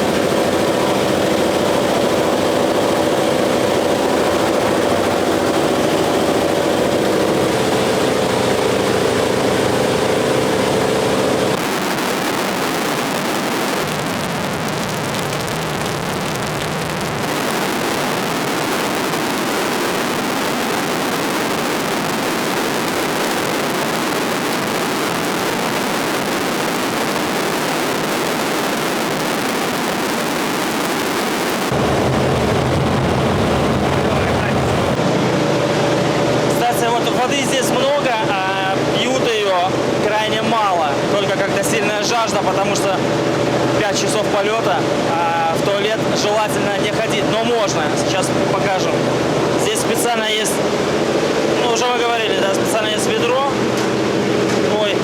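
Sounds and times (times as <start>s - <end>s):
radial engine droning in cabin: 0.0s - 55.0s
loud even rushing noise: 17.1s - 36.4s.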